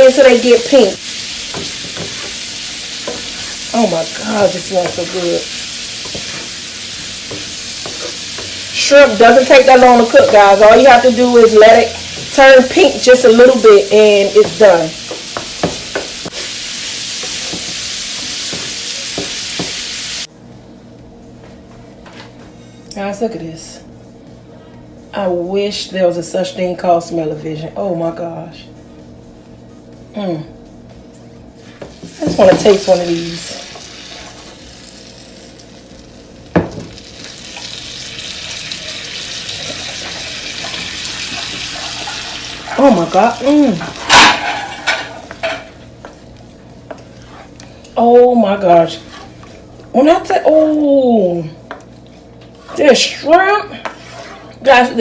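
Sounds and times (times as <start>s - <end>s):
shrimp sizzling in a pan: 0.0s - 20.3s, 32.0s - 46.2s.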